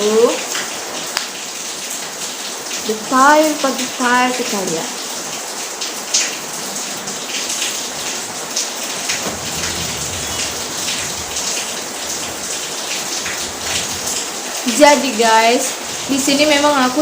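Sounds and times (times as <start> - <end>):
steady rain hiss: 0.0 - 17.0.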